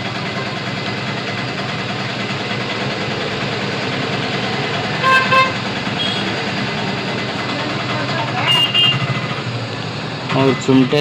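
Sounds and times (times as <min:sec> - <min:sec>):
short horn toots: 0:05.0 - 0:06.3, 0:08.4 - 0:09.1.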